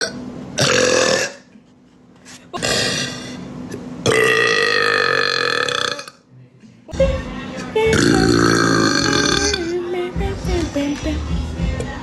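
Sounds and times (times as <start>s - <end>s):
woman burping: 0.0s - 1.5s, 2.6s - 3.4s, 4.0s - 6.2s, 7.9s - 9.7s.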